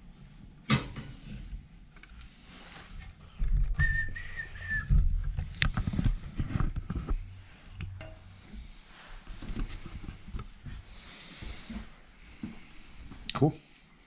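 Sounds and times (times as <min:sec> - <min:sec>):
high whistle-like tone: 0:03.8 - 0:05.1.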